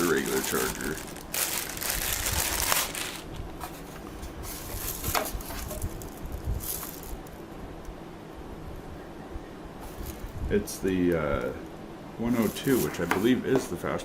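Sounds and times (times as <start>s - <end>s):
packaging crinkling and rustling: 0.0s - 7.4s, 12.3s - 13.4s.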